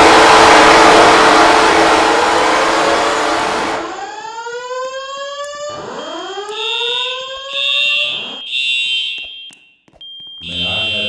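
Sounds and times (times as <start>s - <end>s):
loud rushing noise: 0.0s - 4.1s
fire alarm whoop sweeps: 0.0s - 11.0s.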